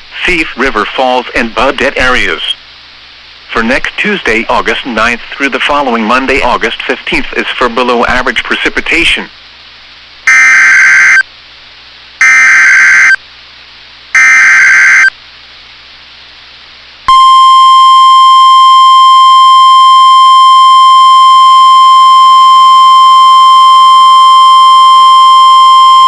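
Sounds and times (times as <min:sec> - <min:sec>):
steady single-pitch alert tone: 0:10.3 - 0:11.2, 0:12.2 - 0:13.2, 0:14.2 - 0:15.1, 0:17.1 - 0:26.0
warbling digital header bursts: 0:10.3 - 0:11.2, 0:12.2 - 0:13.2, 0:14.2 - 0:15.1.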